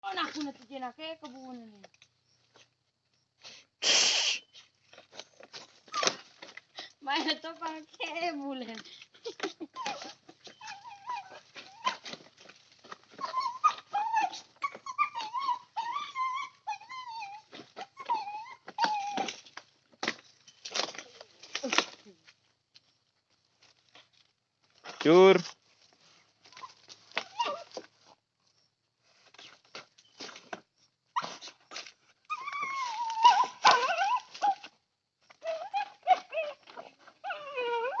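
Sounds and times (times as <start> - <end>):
dogs whining: 9.3 - 12.3, 13.0 - 19.7, 26.5 - 27.9, 29.4 - 38.0
dogs yipping: 9.7 - 12.2, 13.0 - 19.4, 26.5 - 27.9, 31.1 - 38.0.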